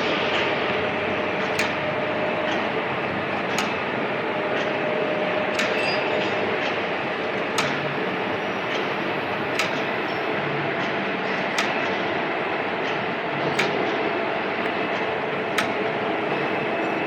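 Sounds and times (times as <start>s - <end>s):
machine running: 0.0s - 17.0s
sharp clicks: 1.4s - 4.8s, 5.4s - 8.0s, 8.6s - 12.0s, 14.6s - 16.0s.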